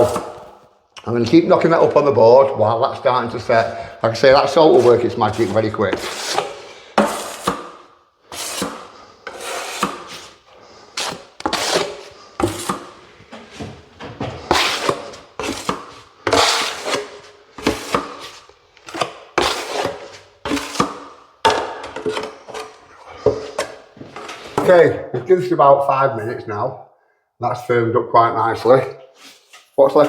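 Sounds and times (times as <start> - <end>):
trowel scraping and slapping filler: 0.0 - 0.7, 3.3 - 24.8, 29.0 - 30.0.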